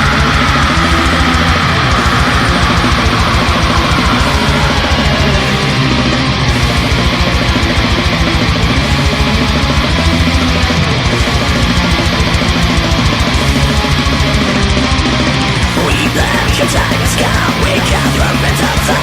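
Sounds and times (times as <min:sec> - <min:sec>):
heavy metal music: 0:00.0 - 0:19.0.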